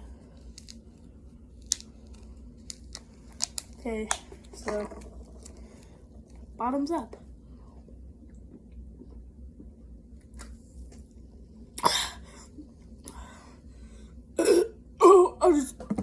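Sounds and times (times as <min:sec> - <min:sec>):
person coughing: 0:11.8 - 0:12.2, 0:14.4 - 0:15.6.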